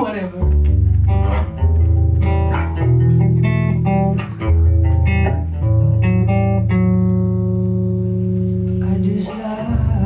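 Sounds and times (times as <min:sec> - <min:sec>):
guitar picking over bass notes: 0:00.4 - 0:10.0.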